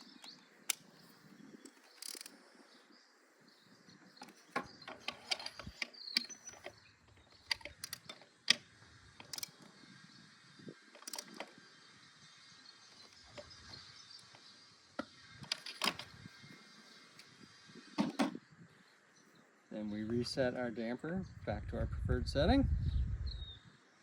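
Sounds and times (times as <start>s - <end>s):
torque wrench ratcheting: 1.9s - 2.3s
torque wrench click: 1.9s - 2.4s.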